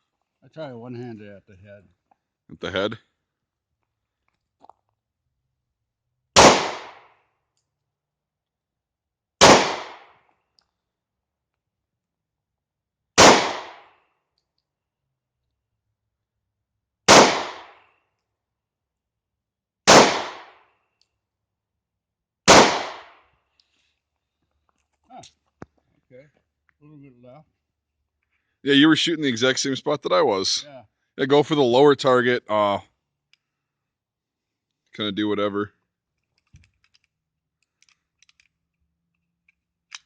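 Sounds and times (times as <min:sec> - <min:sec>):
pistol shots: 0:06.4 - 0:07.1, 0:09.4 - 0:10.2, 0:13.2 - 0:13.9, 0:17.1 - 0:17.8, 0:19.9 - 0:20.6, 0:22.5 - 0:23.2.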